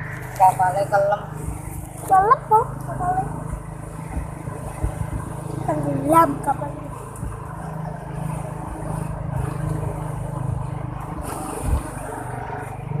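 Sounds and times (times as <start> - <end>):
engine running with pulsing rumble: 0.0 - 13.0.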